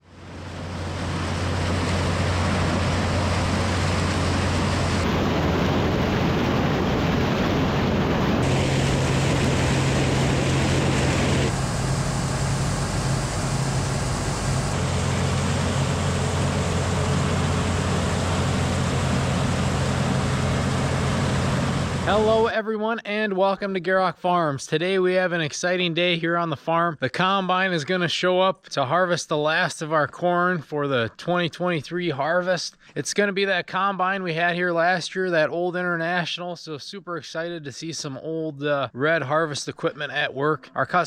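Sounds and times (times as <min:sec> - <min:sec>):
farm machinery engines droning: 0:00.0 - 0:22.5
loud rushing noise: 0:00.1 - 0:22.4.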